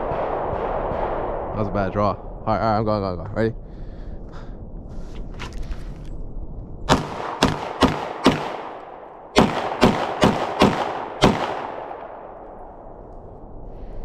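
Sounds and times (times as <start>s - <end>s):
pistol shots with echo: 6.9s - 12.5s.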